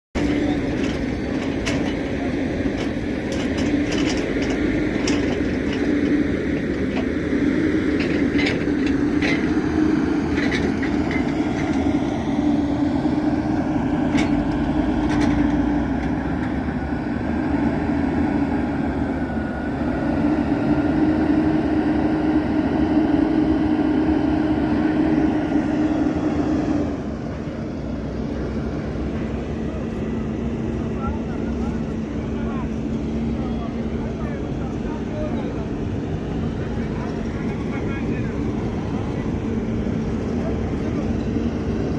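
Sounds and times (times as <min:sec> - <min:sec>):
construction machinery engine running: 0:00.2 - 0:41.9
sharp knocks and clanks: 0:02.7 - 0:07.2.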